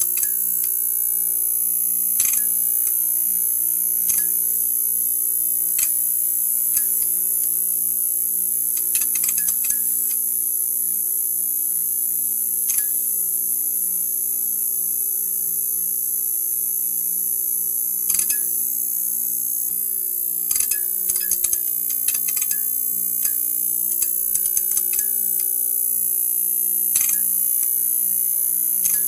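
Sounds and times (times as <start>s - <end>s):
neon sign buzzing: 0.0s - 13.5s, 17.4s - 29.0s
sharp crackling clicks: 8.8s - 10.2s, 20.5s - 22.6s, 23.2s - 25.5s.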